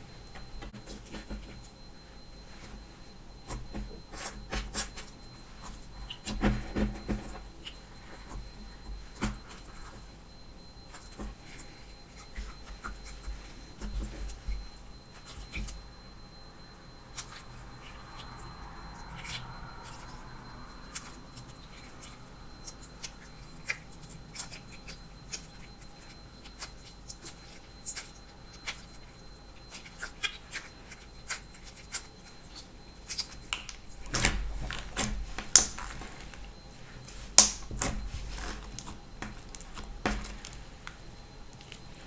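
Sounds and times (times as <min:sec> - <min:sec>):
slime clicking and popping: 0:33.1 - 0:36.6, 0:37.3 - 0:42.0.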